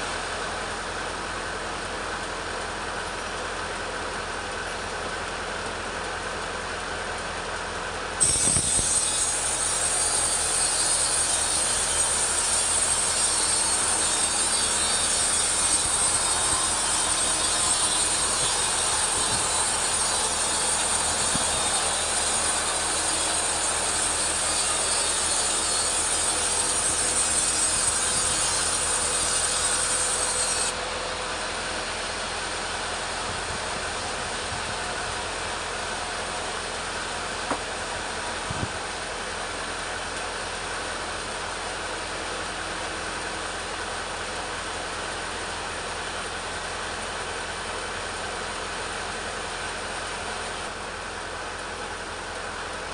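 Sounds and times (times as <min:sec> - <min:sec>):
chainsaw cutting wood: 0:08.2 - 0:30.8.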